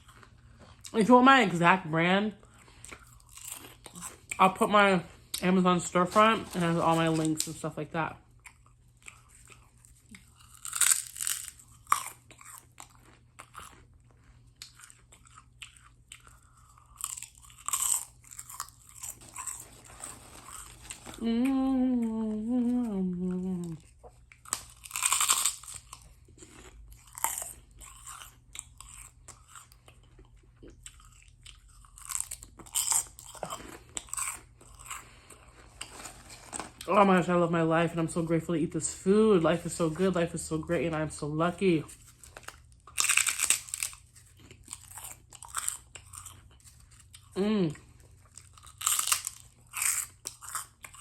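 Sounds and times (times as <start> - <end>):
crunching and chewing: 0.0 - 1.1, 2.3 - 37.3, 41.0 - 51.0
short held vocal sound: 47.4 - 47.8.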